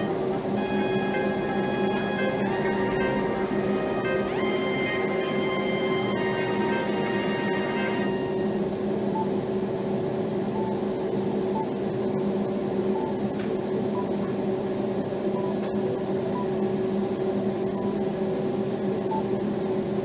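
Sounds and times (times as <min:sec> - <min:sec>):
low two-tone ringtone drone: 0:00.0 - 0:09.4.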